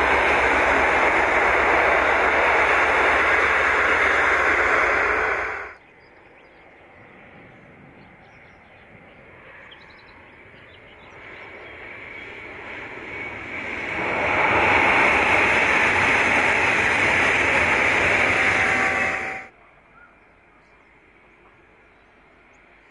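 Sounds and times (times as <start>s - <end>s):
train rumbling past: 0.0s - 5.8s, 12.3s - 19.6s
train approaching: 0.0s - 19.6s
faint bird chirps: 19.6s - 22.8s.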